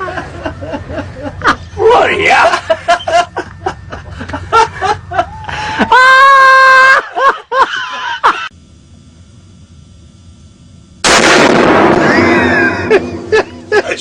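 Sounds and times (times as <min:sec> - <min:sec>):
person laughing: 0:00.0 - 0:08.5, 0:12.0 - 0:14.0
person screaming: 0:05.9 - 0:07.0
short cries: 0:12.0 - 0:13.7.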